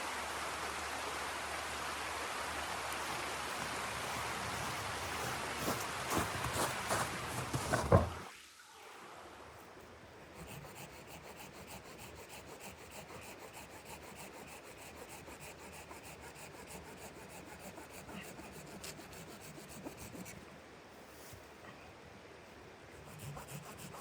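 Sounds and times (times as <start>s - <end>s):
rapid rasping strokes: 10.4s - 20.4s.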